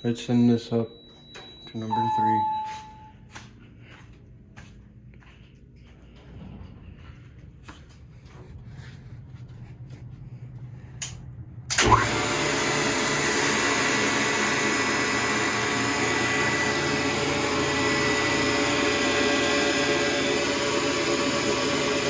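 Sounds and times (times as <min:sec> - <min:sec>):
elevator motor whirring: 0:11.6 - 0:22.0
motor jolt: 0:11.7 - 0:14.2.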